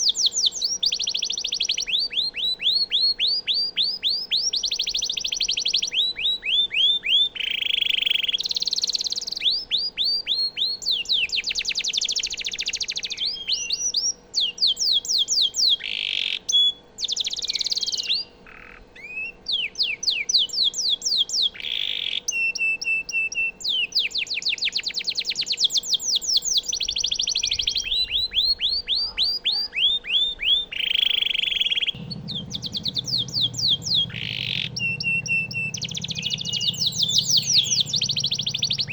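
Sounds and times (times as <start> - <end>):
canary singing trills: 0.0 - 38.9
low hum: 31.9 - 38.9.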